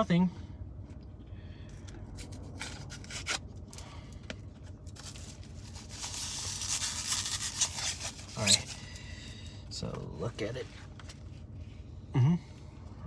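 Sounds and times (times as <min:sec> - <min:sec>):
food packaging crinkling: 0:04.8 - 0:08.8.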